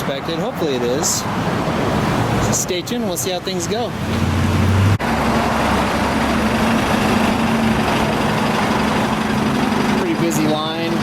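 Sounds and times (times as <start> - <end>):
cars idling: 3.2 - 11.0.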